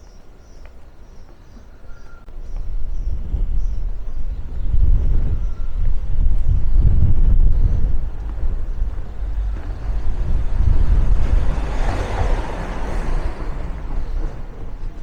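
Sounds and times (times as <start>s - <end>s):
steady low traffic rumble: 0.0s - 15.0s
vehicle passing close by: 7.5s - 15.0s.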